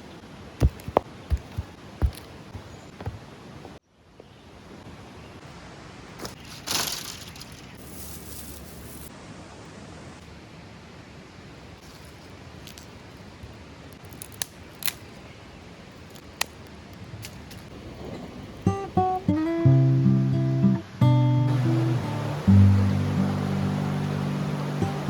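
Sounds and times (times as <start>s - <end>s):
steady hiss: 4.8s - 19.5s, 20.7s - 25.0s.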